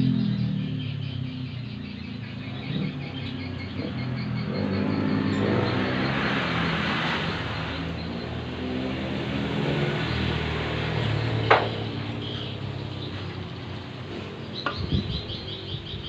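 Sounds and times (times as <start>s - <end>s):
birds chirping: 0.0s - 16.0s
low engine hum: 0.0s - 16.0s
sharp metallic knock: 11.4s - 11.9s.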